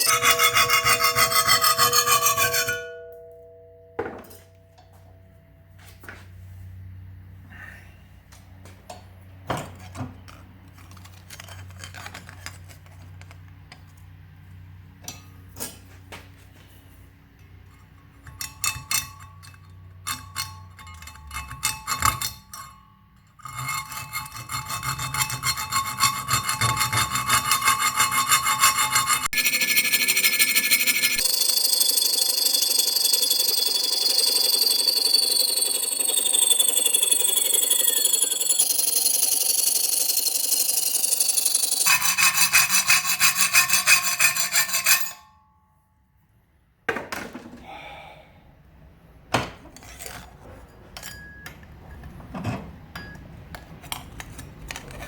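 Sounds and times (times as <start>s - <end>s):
hand tool scraping metal plate: 0.0s - 3.2s, 23.4s - 35.4s, 37.8s - 45.3s
steady whir with falling tones: 31.3s - 41.4s.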